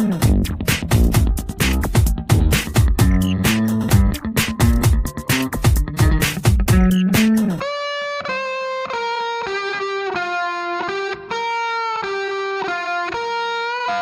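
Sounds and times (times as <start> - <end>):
drums and full band: 0.0 - 7.5
electric guitar melody: 0.0 - 14.0.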